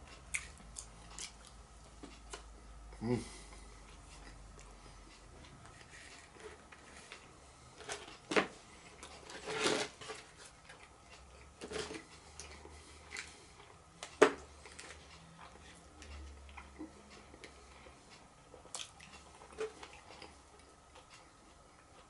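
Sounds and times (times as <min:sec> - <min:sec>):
food crunching: 0:00.1 - 0:02.4, 0:18.5 - 0:22.0
person chewing: 0:00.1 - 0:08.2, 0:08.8 - 0:22.0.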